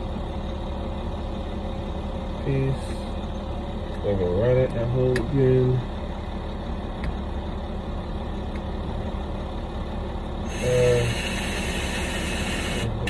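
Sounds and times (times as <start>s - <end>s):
low engine rumble: 0.0s - 13.0s.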